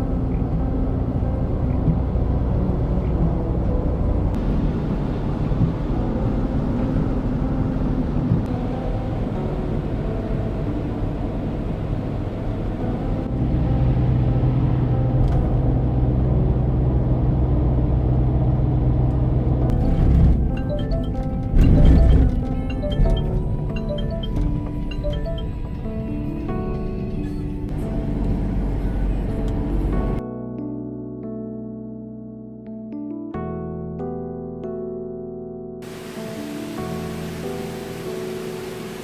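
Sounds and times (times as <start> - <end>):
car engine and road rumble: 0.0 - 30.2.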